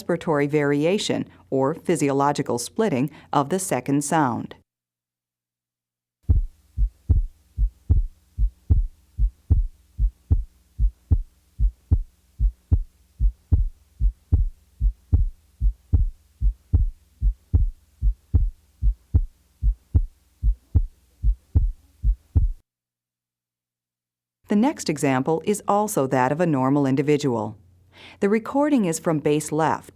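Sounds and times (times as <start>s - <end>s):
heartbeat through stethoscope: 6.2s - 22.6s
faint steady hum: 6.3s - 22.6s.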